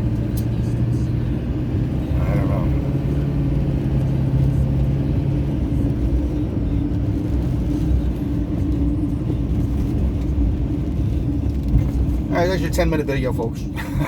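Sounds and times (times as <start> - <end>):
low droning hum: 0.0 - 12.7
car engine and road noise: 0.0 - 14.0.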